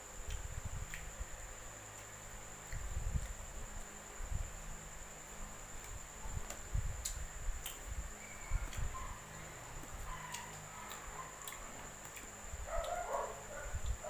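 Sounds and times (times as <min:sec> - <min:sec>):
chewing and crunching: 0:08.7 - 0:14.0
dog barking: 0:08.9 - 0:09.3, 0:10.1 - 0:11.5, 0:12.7 - 0:13.8.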